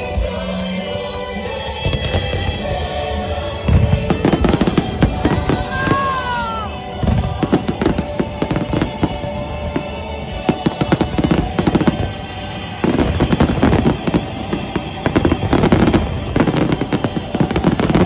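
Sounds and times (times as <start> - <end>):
fireworks banging and crackling: 0.0 - 18.0
music: 0.0 - 18.0.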